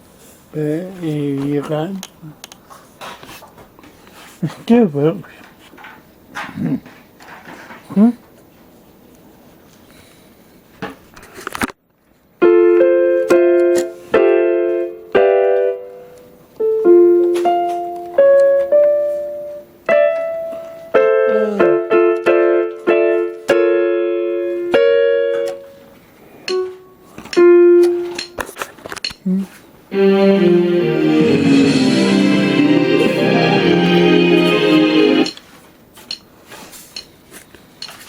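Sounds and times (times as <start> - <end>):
electronic keyboard piano notes: 12.4 - 25.8, 26.4 - 28.4, 29.9 - 35.4.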